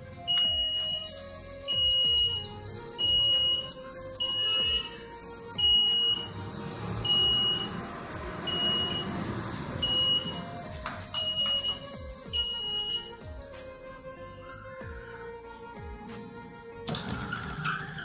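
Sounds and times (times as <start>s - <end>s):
background music: 0.0s - 18.0s
electronic buzzer beeping: 0.3s - 7.8s, 8.4s - 10.6s, 11.2s - 13.2s.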